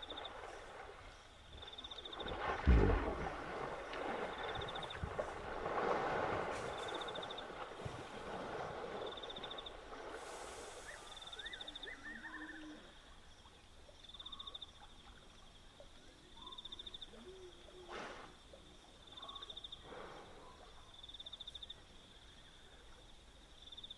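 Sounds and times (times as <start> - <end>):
faint low calls: 2.4 - 4.3.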